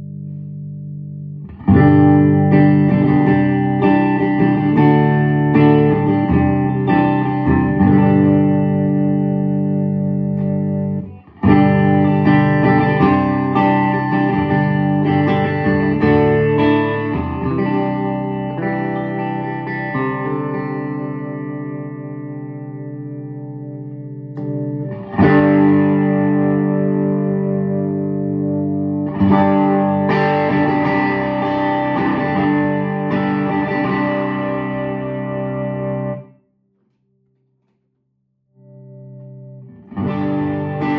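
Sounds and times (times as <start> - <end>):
clean electric guitar chords: 0.0 - 36.4, 38.5 - 40.9.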